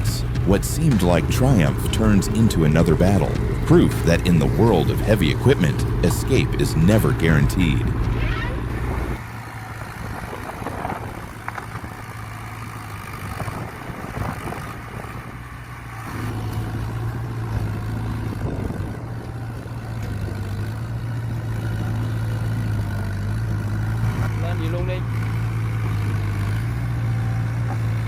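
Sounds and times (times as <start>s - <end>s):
excavator diesel engine humming: 0.0s - 28.0s.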